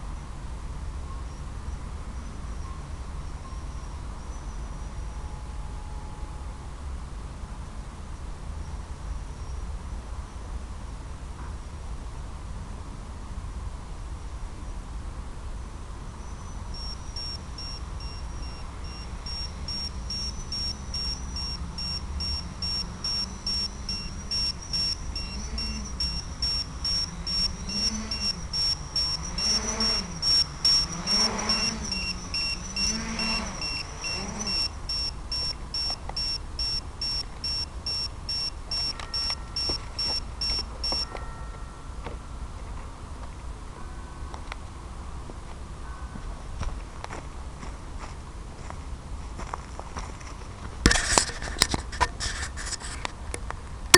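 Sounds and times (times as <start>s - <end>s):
low wavering tone: 1.0s - 6.9s, 16.2s - 42.6s
short high electronic beeps: 16.2s - 41.1s.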